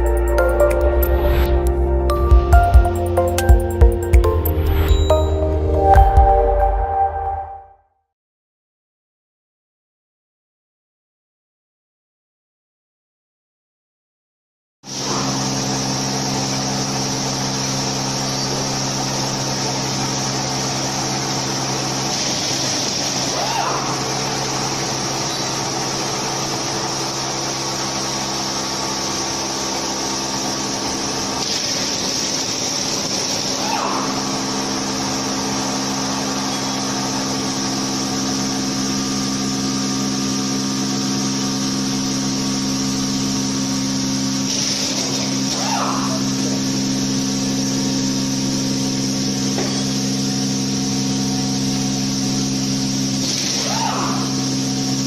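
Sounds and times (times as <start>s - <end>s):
milling machine hum: 14.9s - 55.0s.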